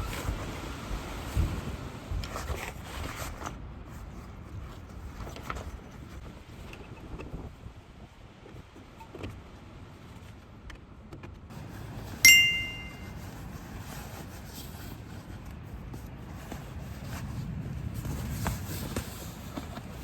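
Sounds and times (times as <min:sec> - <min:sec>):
bright metallic ding: 0:12.2 - 0:13.1.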